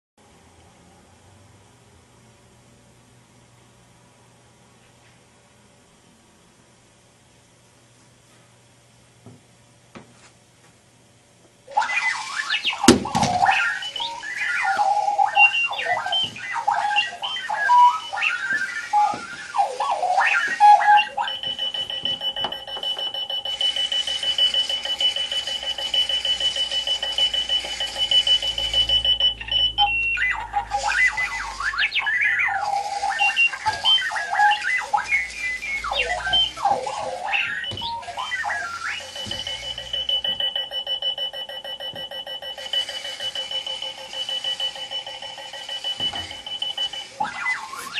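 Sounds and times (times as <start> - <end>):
alarm clock beeping: 11.7 - 47.9.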